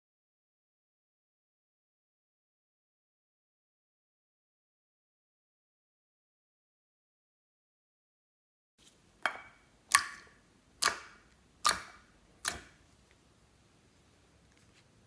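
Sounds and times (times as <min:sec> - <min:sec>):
sharp pops or clicks: 0:09.3 - 0:12.8.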